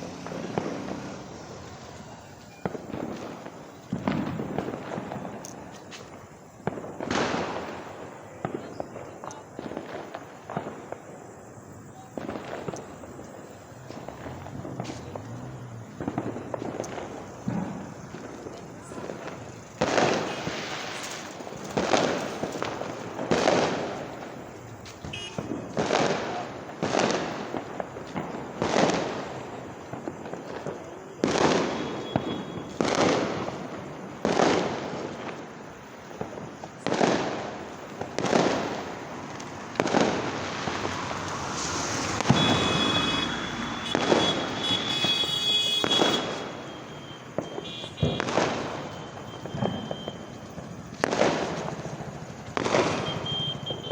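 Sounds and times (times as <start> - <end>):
firecrackers bursting with echo: 0.0 - 53.9
high steady whistling tone: 45.9 - 50.5, 52.9 - 53.9.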